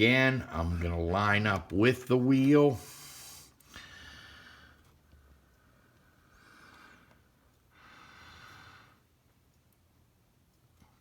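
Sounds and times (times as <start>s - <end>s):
faint breaths: 2.8s - 9.2s.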